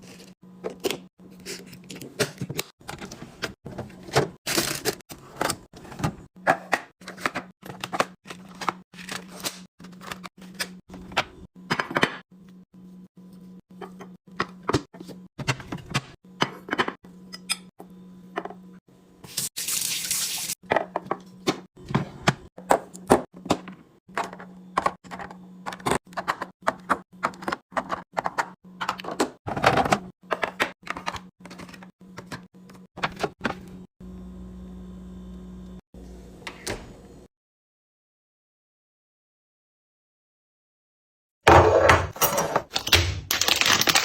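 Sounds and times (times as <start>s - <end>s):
containers clicking and clinking: 41.5s - 44.0s.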